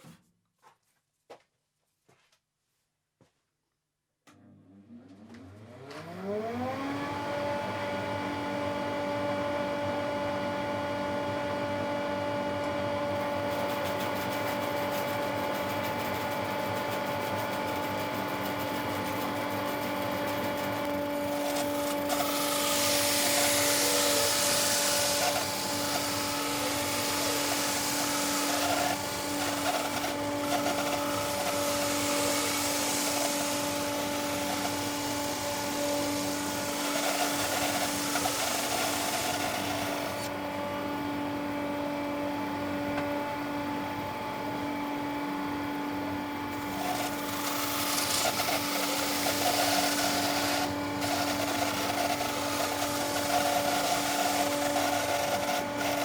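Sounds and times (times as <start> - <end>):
bandsaw motor humming: 12.3 - 40.6, 46.0 - 56.0
saw blade cutting wood: 13.2 - 40.3, 46.6 - 56.0.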